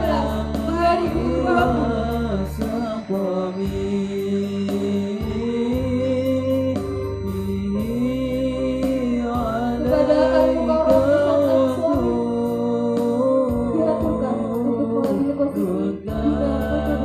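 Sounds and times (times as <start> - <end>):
male students singing: 0.0 - 17.0
sustained low instrumental notes: 0.0 - 17.0.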